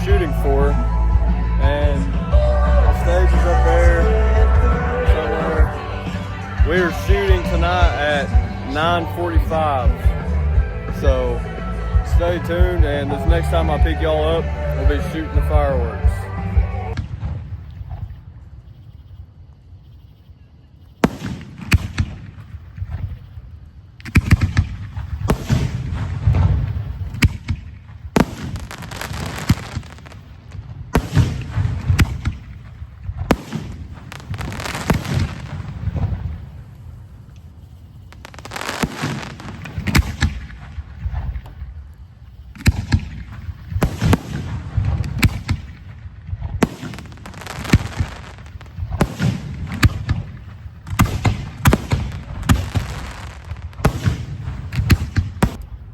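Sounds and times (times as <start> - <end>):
fireworks bangs and crackles: 0.0 - 18.8, 21.0 - 55.9
aerial shells fired from mortars: 21.0 - 23.3, 24.0 - 36.8, 37.7 - 41.8, 42.5 - 55.9.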